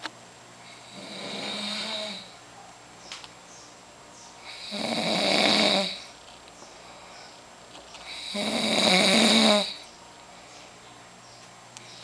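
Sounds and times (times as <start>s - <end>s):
man snoring: 0.7s - 2.4s, 4.4s - 6.1s, 8.1s - 9.8s.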